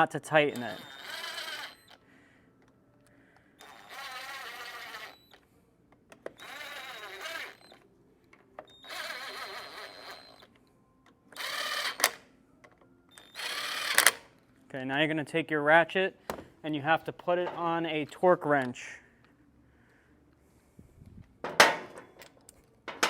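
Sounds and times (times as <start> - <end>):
power drill running: 0.4 - 2.0, 3.6 - 5.4, 6.3 - 7.8, 8.6 - 10.5, 11.4 - 12.2, 13.2 - 14.2
drill clicks: 0.5 - 2.0, 3.6 - 5.4, 6.1 - 7.8, 8.6 - 10.5, 11.4 - 12.2, 13.1 - 14.3.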